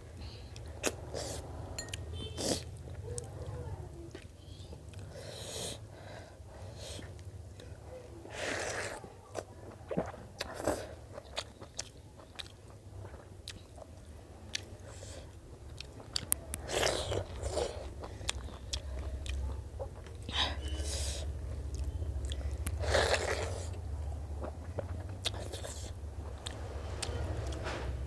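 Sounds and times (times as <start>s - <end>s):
person chewing and crunching: 9.3s - 21.0s, 21.6s - 27.7s
low steady hum: 12.9s - 28.0s.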